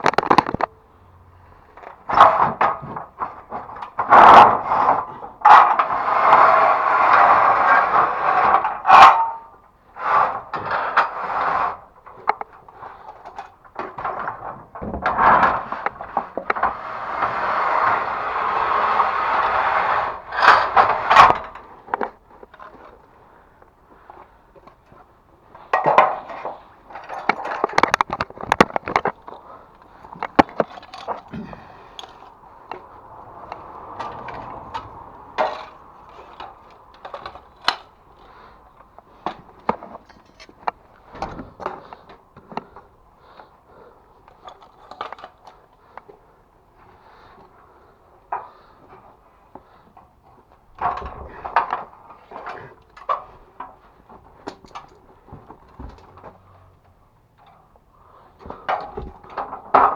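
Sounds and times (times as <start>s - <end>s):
knocks and clatters of hard objects: 0.0s - 0.7s, 12.0s - 16.8s, 24.1s - 43.5s, 49.6s - 57.6s, 58.4s - 59.9s.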